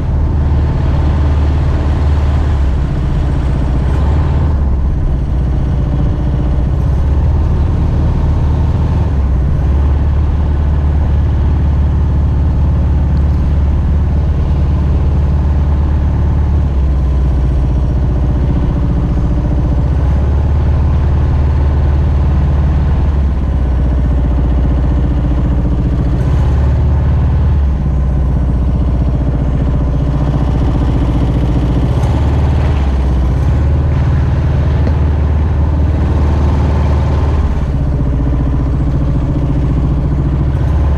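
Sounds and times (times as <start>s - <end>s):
boat engine running: 0.0s - 40.9s.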